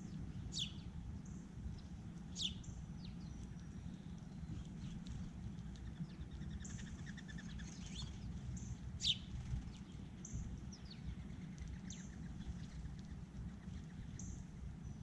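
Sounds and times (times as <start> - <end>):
steady low rumble: 0.0 - 15.0
bird trilling: 5.8 - 9.6.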